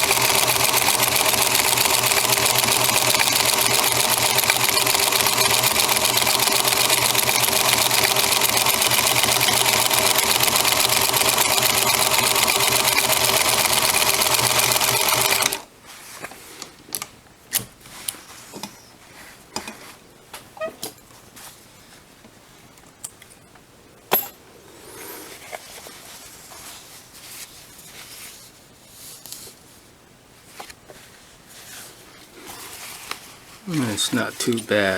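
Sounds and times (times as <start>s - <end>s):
sewing machine needle clatter: 0.0s - 15.6s.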